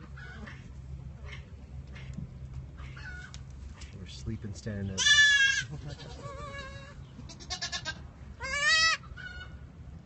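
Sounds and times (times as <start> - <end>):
goat kids bleating: 4.9 - 9.6.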